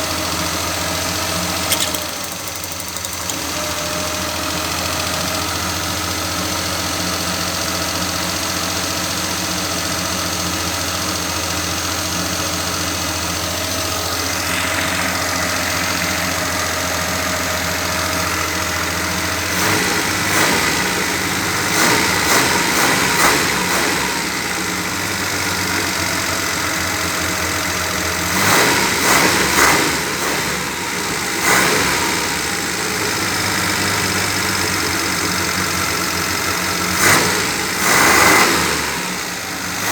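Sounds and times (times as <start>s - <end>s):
car engine idling: 10.0s - 28.4s
engine revving surges: 14.2s - 25.7s, 28.2s - 33.6s, 36.8s - 39.9s.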